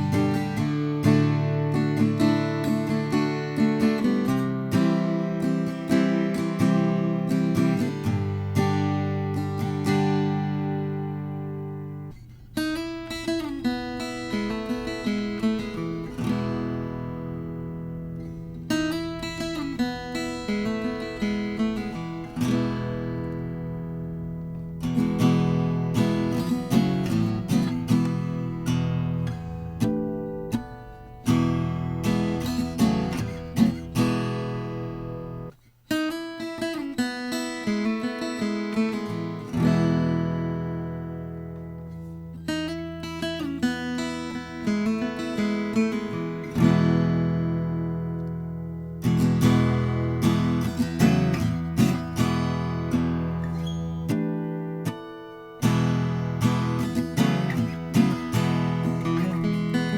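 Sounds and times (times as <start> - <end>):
acoustic guitar strummed chords: 0.0 - 59.9
guitar picked single notes: 6.8 - 35.6.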